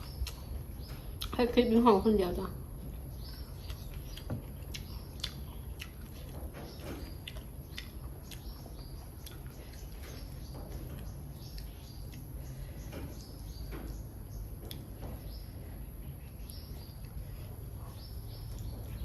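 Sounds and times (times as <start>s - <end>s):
chewing with wet mouth clicks: 0.0s - 1.4s, 3.2s - 12.5s, 14.6s - 14.9s.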